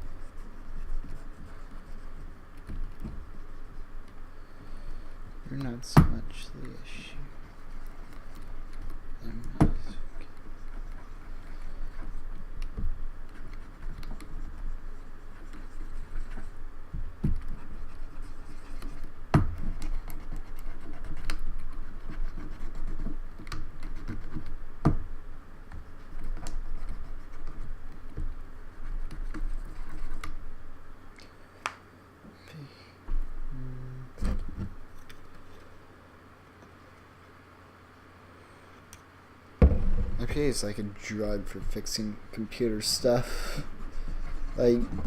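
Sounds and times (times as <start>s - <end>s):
cotton swab scrubbing keyboard: 17.2s - 24.6s.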